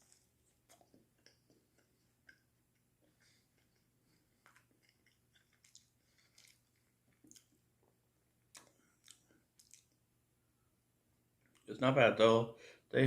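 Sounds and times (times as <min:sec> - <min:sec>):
chewing with soft crunches: 0:00.0 - 0:10.1.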